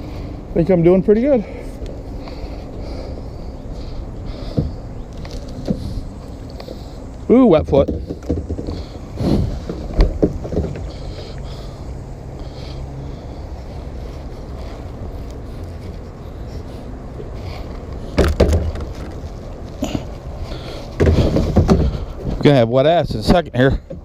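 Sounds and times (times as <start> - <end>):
kayak hull knocking: 7.8 - 8.9, 9.6 - 10.9, 18.2 - 19.1, 21.0 - 22.1.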